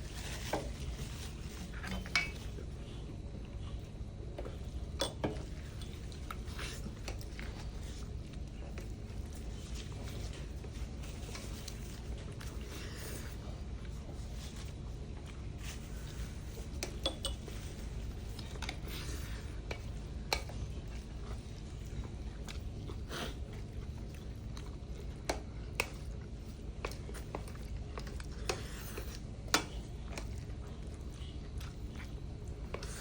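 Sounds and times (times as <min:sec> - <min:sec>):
low room hum: 0:00.0 - 0:33.0
utensils clinking against bowls: 0:01.2 - 0:02.6, 0:05.0 - 0:05.9, 0:16.1 - 0:20.6.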